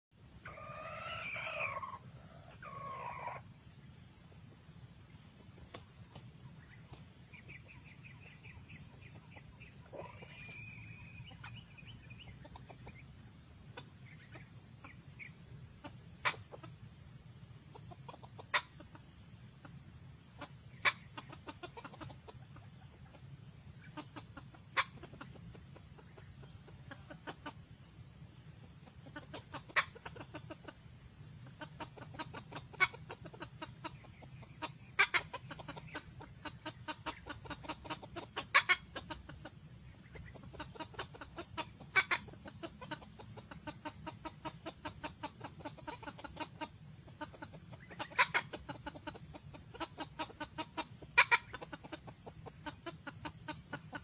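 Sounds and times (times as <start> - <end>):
rooster crowing: 0.4 - 3.4
rapid clucks: 5.6 - 13.1, 13.7 - 16.8, 17.6 - 19.8, 20.4 - 27.7, 28.6 - 54.0.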